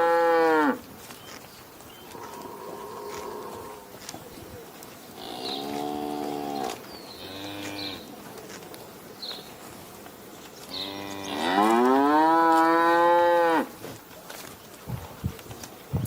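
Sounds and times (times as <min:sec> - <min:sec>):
cow mooing: 0:05.2 - 0:08.0, 0:10.8 - 0:13.7.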